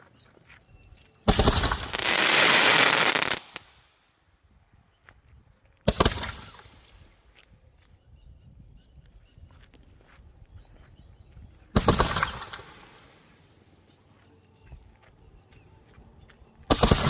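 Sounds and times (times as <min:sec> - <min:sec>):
fireworks crackling rattle: 0:01.3 - 0:03.7.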